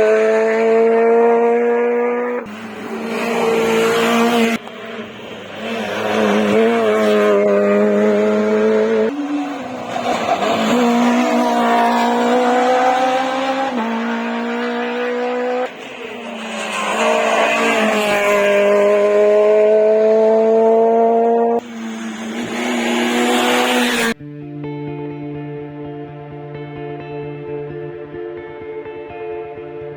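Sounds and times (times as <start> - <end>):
rally car engines accelerating: 0.0 - 24.2
music: 24.2 - 29.9.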